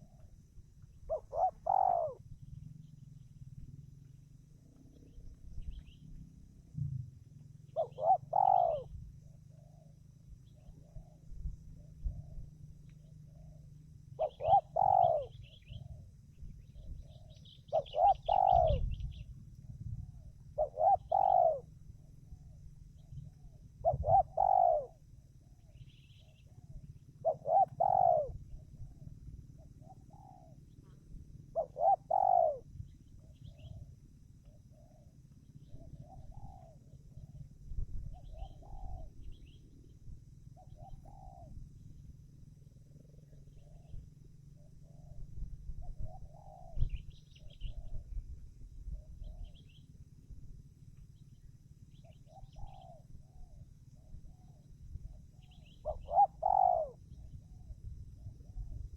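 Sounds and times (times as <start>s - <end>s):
small birds chirping: 0.0s - 3.8s, 7.6s - 19.4s, 20.2s - 29.0s, 45.8s - 48.3s, 51.0s - 58.8s
dove cooing: 0.0s - 6.3s, 7.4s - 19.3s, 20.0s - 49.8s, 51.9s - 58.9s.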